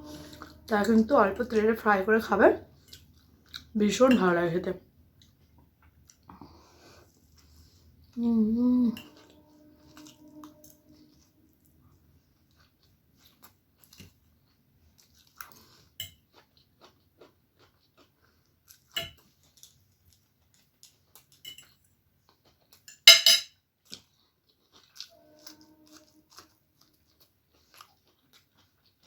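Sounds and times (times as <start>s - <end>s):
chewing and mouth clicks: 2.8s - 3.7s, 5.2s - 6.5s, 9.1s - 22.9s, 23.8s - 29.0s
clinks against plate: 22.9s - 23.6s.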